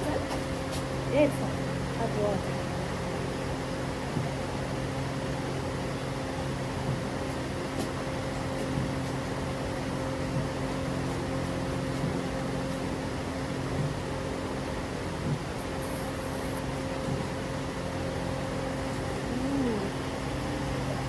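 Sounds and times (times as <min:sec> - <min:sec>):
mechanical motor hum: 0:18.7 - 0:21.0.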